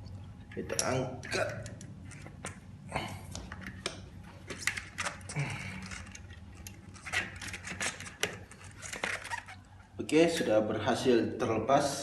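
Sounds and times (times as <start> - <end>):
metallic clicks and scrapes: 3.5 - 9.6.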